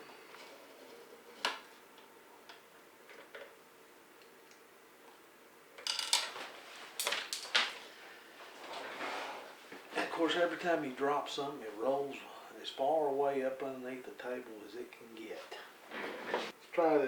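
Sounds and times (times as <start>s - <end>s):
small hard parts clicking on a workbench: 5.8s - 6.4s, 7.0s - 7.8s.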